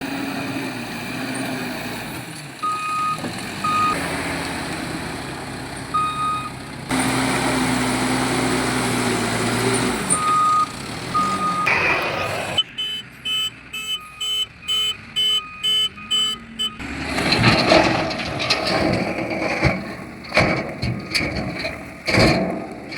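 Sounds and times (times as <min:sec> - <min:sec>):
diesel machinery running: 0:00.0 - 0:22.9
reversing alarm beeping: 0:02.6 - 0:04.0, 0:06.0 - 0:06.6, 0:10.0 - 0:16.8.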